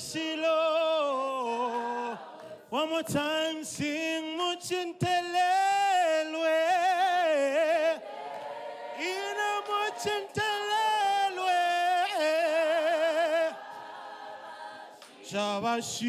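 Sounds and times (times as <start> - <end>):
choir singing a cappella: 1.0 - 2.8, 7.0 - 16.0.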